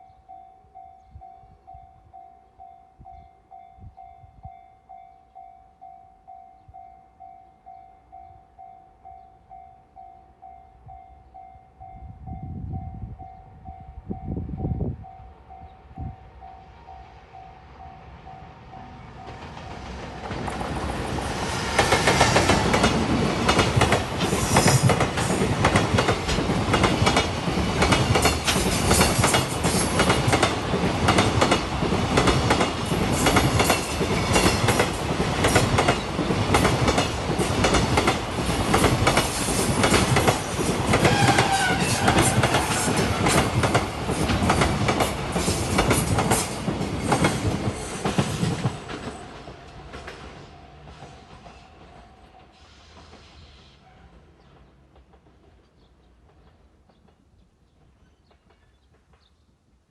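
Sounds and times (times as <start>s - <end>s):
freight train passing: 0.0s - 59.2s
train wheels clattering over rail joints: 19.3s - 53.3s.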